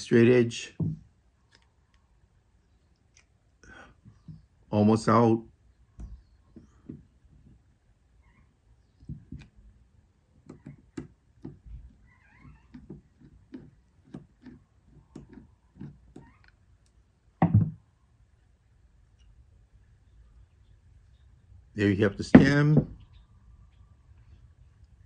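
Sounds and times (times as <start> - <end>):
thump: 17.4 - 17.8.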